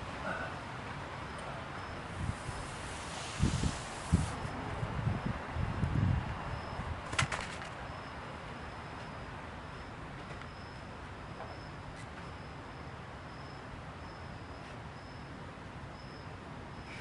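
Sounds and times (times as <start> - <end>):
outdoor background noise: 0.0 - 17.0
faint high chirp: 16.0 - 17.0.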